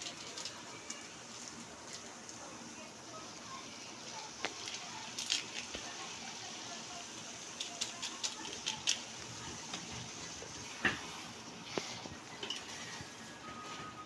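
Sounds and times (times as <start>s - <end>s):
steady hiss: 0.0s - 13.9s
metal utensil scraping cooking pot: 10.6s - 13.2s.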